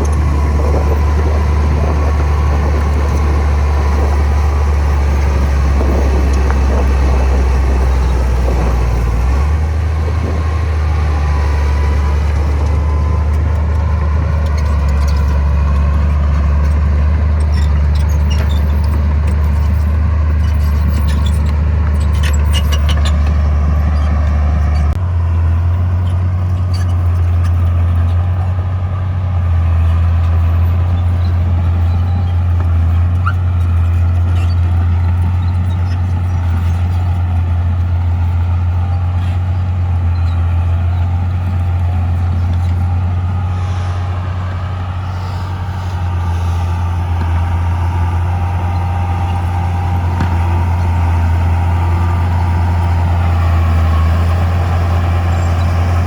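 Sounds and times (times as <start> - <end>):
diesel engine under load: 0.0 - 56.0.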